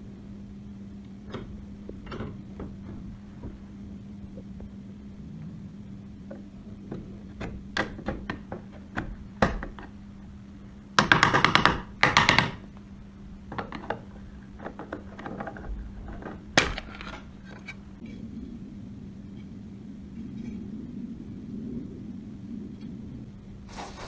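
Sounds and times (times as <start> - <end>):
low steady hum: 0.0 - 24.0
clicks and knocks on metal parts: 11.0 - 12.6
rapid scraping strokes: 23.7 - 24.0.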